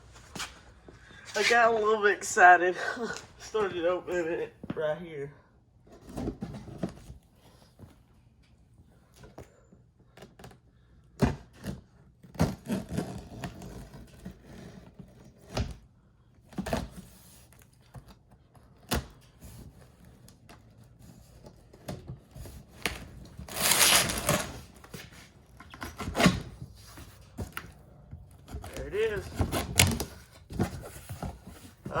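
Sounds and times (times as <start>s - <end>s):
rustling scrape: 0.0s - 1.8s, 23.4s - 25.4s
cardboard and packing rustling: 5.8s - 32.0s.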